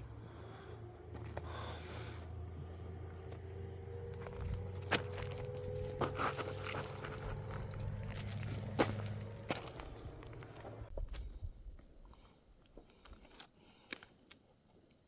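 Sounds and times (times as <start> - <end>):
footsteps on stony ground: 1.0 - 12.1.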